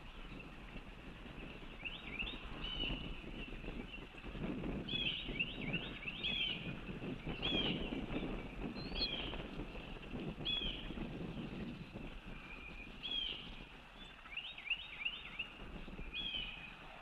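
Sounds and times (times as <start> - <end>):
bird calling: 12.3 - 17.0.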